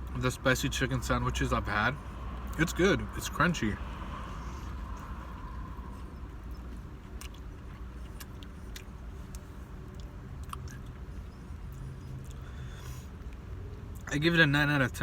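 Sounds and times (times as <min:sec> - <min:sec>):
chewing crunchy food: 0:04.7 - 0:12.5.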